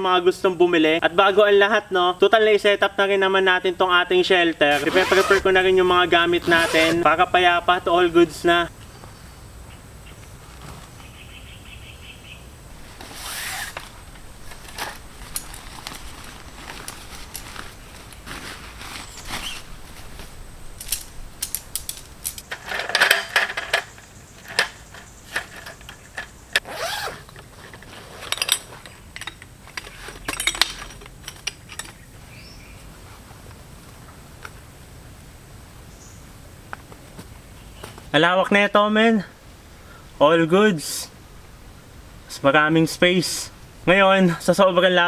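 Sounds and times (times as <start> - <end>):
camping gear rustling: 4.6 - 8.5, 12.7 - 34.0
gear clattering: 20.7 - 23.9
gear clicks and rattles: 20.8 - 32.0.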